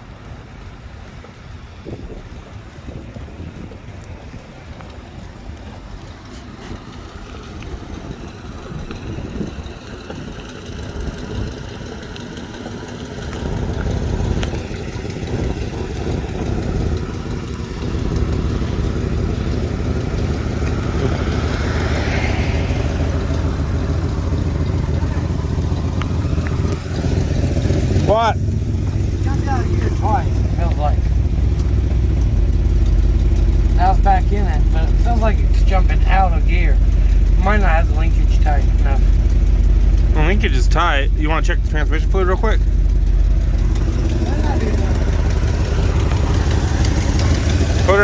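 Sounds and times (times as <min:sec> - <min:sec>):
car engine running: 0:00.0 - 0:48.0.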